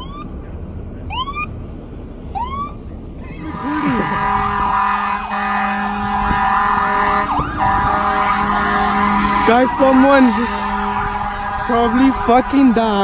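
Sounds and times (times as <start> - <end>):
sirens wailing and yelping: 0.0 - 0.4, 1.1 - 1.5, 2.3 - 13.0
siren whoop: 3.4 - 13.0
steady horn-like tone: 3.5 - 13.0.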